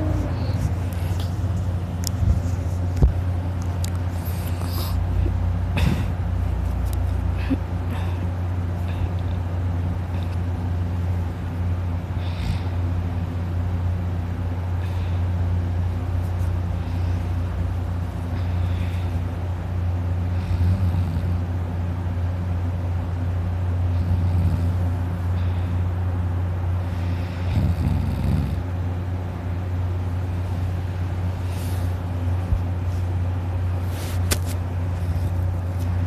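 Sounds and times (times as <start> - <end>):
steady low drone: 0.0 - 3.3
man snoring: 20.3 - 21.4, 23.9 - 24.9, 27.4 - 28.7.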